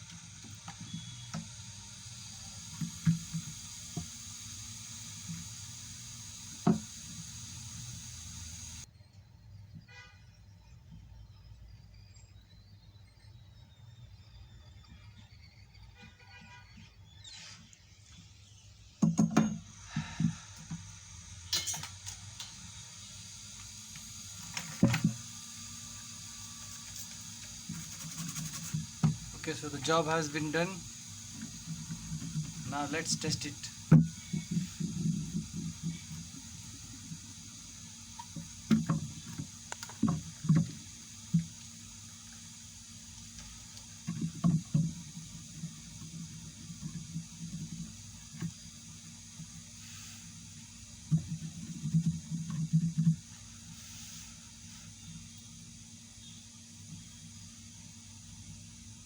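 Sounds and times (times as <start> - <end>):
faint steady hiss: 0.0 - 8.9, 19.4 - 59.0
steady low hum: 0.0 - 8.9.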